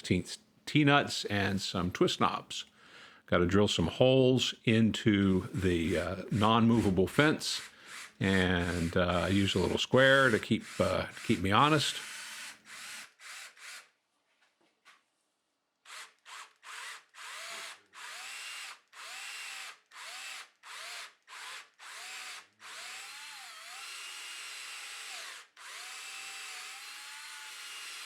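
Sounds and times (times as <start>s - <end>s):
power drill boring into plywood: 5.4s - 14.0s, 15.8s - 28.0s.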